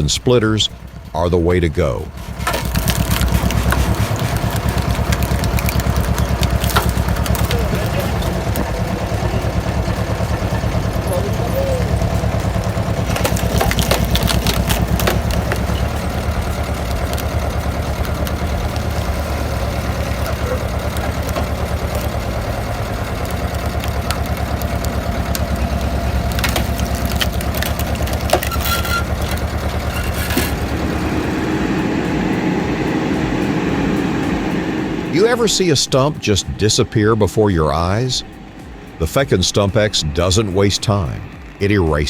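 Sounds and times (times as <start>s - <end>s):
tractor diesel engine running: 0.0s - 42.0s
wood cracking and splintering: 2.2s - 11.0s, 11.9s - 30.8s.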